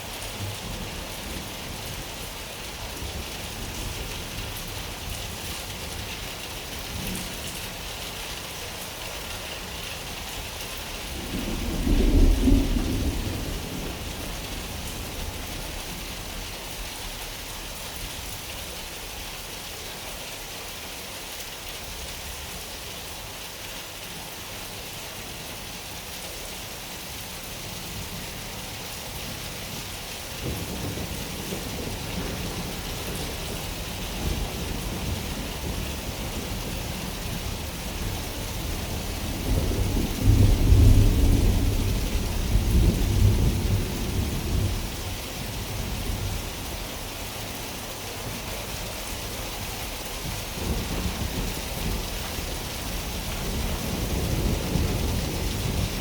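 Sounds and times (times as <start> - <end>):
steady rain: 0.0 - 56.0
thunder rumbling: 11.0 - 16.4, 30.4 - 46.8, 49.8 - 56.0.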